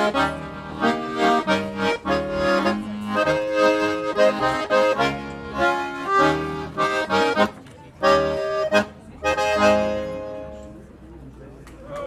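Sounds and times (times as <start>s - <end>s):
solo instrument playing a march: 0.0s - 7.5s.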